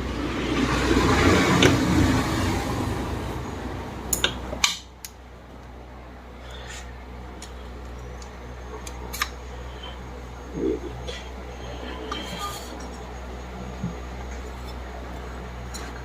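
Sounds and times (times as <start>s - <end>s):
broad noise: 8.4s - 16.0s.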